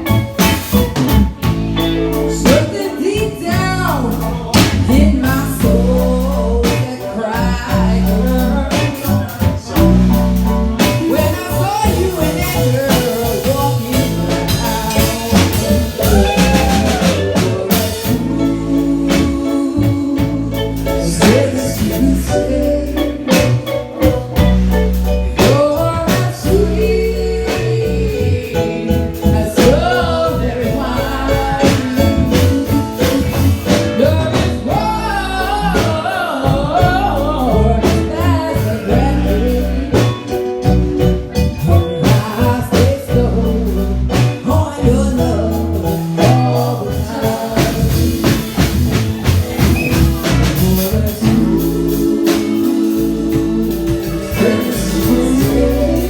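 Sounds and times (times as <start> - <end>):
live reggae band playing: 0.0 - 56.0.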